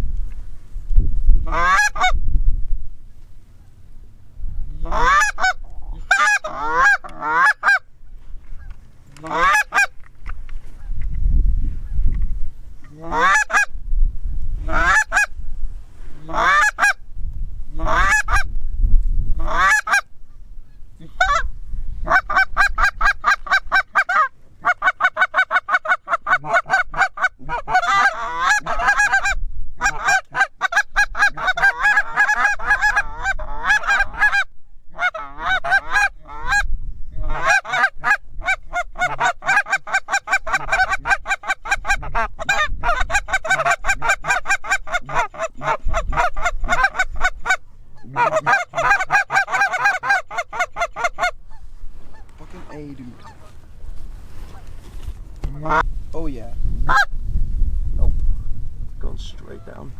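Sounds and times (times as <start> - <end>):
wind rumble on microphone: 0.0 - 7.2, 7.9 - 23.9, 26.2 - 49.2, 50.7 - 59.9
goose honking: 1.5 - 2.1, 4.8 - 7.9, 8.6 - 10.0, 12.8 - 13.7, 14.6 - 15.3, 16.2 - 17.0, 17.8 - 18.5, 19.4 - 20.1, 20.7 - 53.7, 55.5 - 55.9, 56.9 - 57.1.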